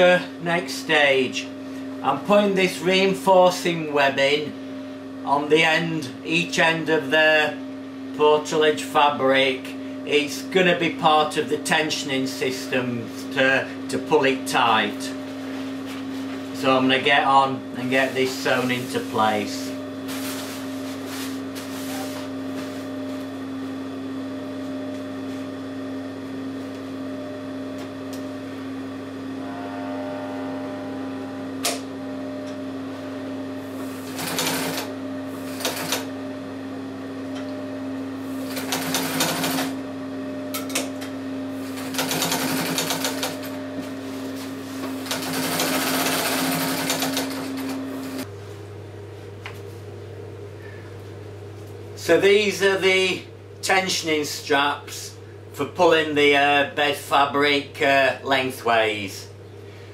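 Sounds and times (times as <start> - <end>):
motor hum: 0.0 - 58.1
sewing machine stitching: 33.9 - 36.1, 38.4 - 39.8, 41.7 - 43.5, 45.0 - 48.2.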